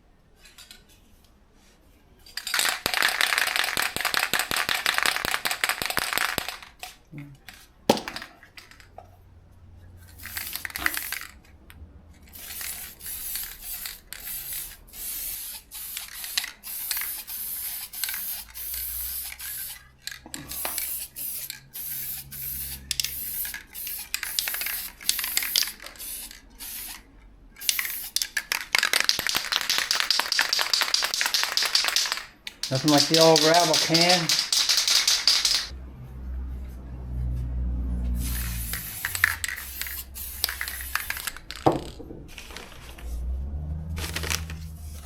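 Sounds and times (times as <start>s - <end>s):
spray can ball rattling: 2.3s - 8.9s, 10.0s - 11.4s, 12.3s - 27.0s, 27.6s - 35.7s, 38.2s - 42.6s, 44.0s - 44.6s
spray paint can spraying: 2.4s - 6.9s, 10.0s - 11.4s, 12.3s - 27.0s, 27.6s - 35.8s, 38.1s - 42.0s.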